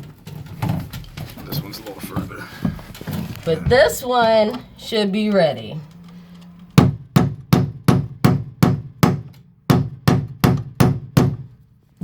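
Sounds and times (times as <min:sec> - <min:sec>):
hammer striking metal: 0:06.8 - 0:11.5.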